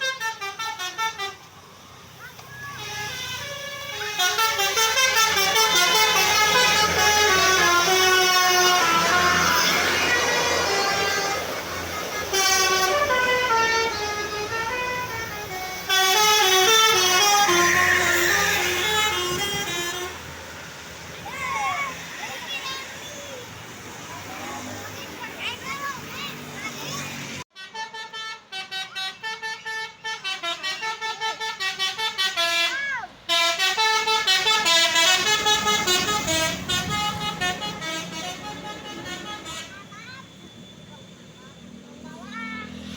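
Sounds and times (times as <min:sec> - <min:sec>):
multi-tone bus horn tune: 0:00.0 - 0:01.6, 0:02.7 - 0:20.6, 0:27.5 - 0:40.0.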